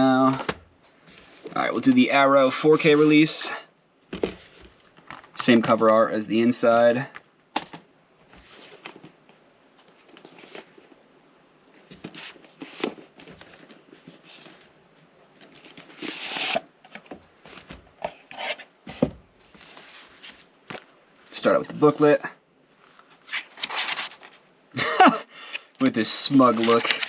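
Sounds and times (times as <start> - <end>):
cardboard and paper rustling: 0.2 - 2.1, 8.3 - 9.2, 9.8 - 11.0, 11.8 - 14.7, 15.3 - 20.9, 22.8 - 24.4, 25.8 - 27.0.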